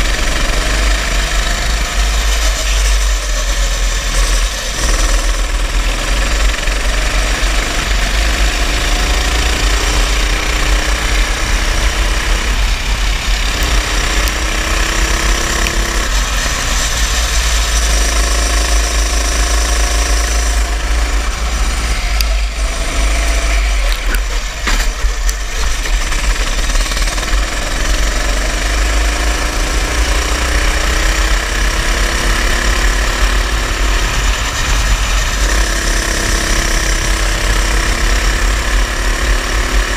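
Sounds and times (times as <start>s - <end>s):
heavy low rumble: 0.0s - 30.0s
go-kart engine revving: 0.0s - 39.9s.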